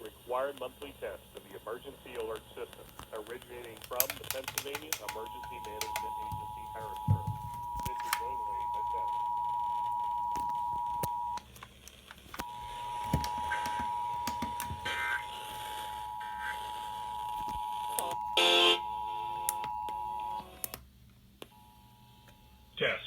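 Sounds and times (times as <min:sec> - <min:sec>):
steady two-tone attention signal: 0:05.1 - 0:11.4.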